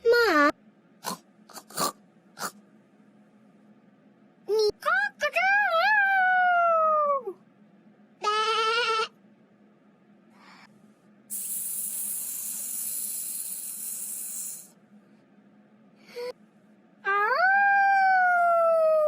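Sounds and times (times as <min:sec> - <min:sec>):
snake-like hiss: 0:11.3 - 0:14.7.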